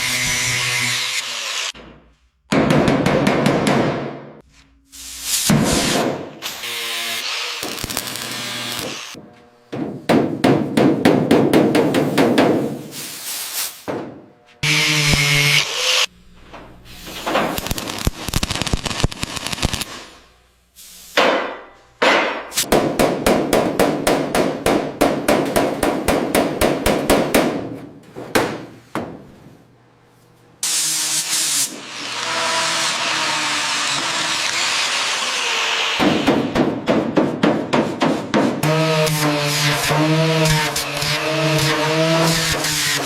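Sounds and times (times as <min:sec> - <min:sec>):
rapid hammer strikes: 0:01.8 - 0:04.4, 0:09.7 - 0:12.7, 0:21.2 - 0:28.6, 0:36.0 - 0:39.2.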